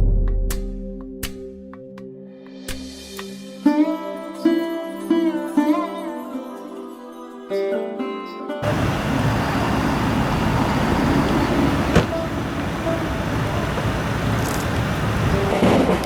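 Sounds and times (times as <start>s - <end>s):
steady rumbling background noise: 8.6s - 15.6s.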